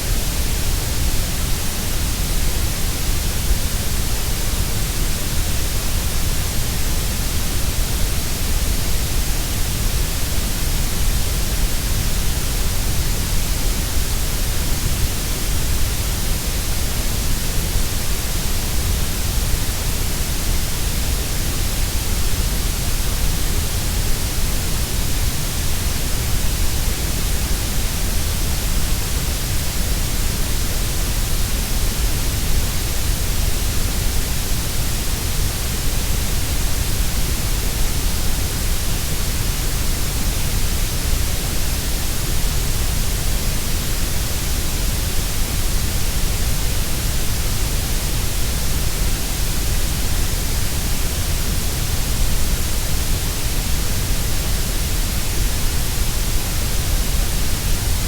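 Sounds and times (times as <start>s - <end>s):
grey noise hiss: 0.0s - 58.0s.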